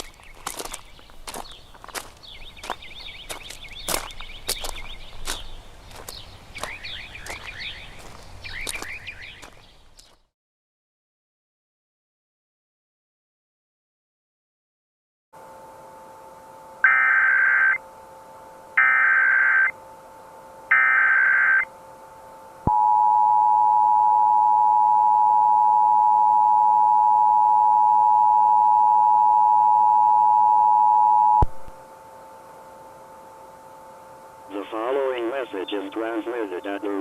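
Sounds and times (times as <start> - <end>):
harsh two-tone alert signal: 16.8 - 17.8, 18.8 - 19.8, 20.7 - 21.7
warbling digital data bursts: 20.7 - 21.7.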